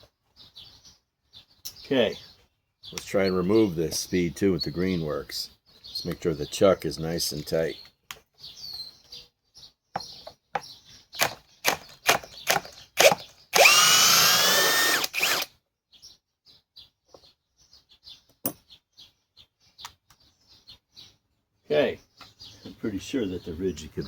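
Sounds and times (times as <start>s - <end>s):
drill chuck clicking: 11.2s - 15.5s
drill running with whine: 11.6s - 15.5s.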